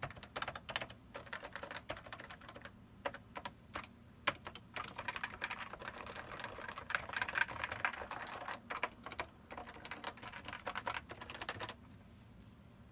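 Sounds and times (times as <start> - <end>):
keyboard typing: 0.0 - 11.8.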